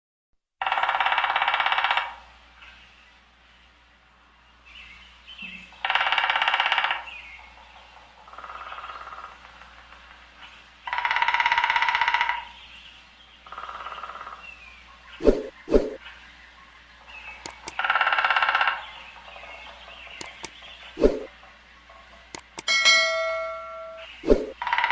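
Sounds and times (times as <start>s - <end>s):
woodpecker drumming on wood: 0.6s - 2.3s, 5.8s - 12.6s, 17.4s - 24.9s
faint bird chirps: 12.0s - 24.7s.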